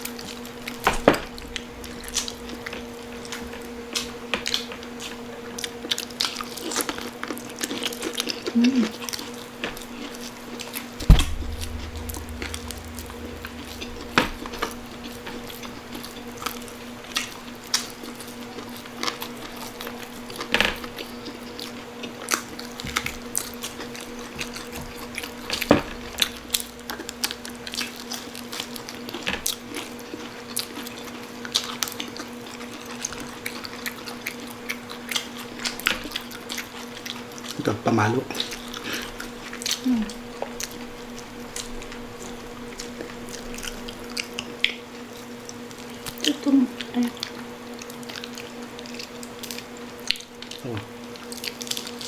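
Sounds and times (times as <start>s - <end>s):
low hum: 1.2s - 4.0s, 11.0s - 17.5s
loud knock: 11.0s - 15.7s
brief low rumble: 11.0s - 16.6s.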